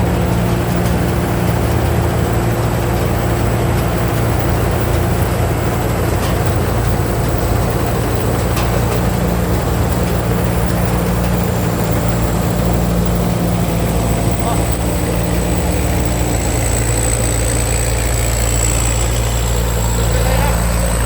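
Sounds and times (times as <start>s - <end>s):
harvester engine droning: 0.0s - 21.0s.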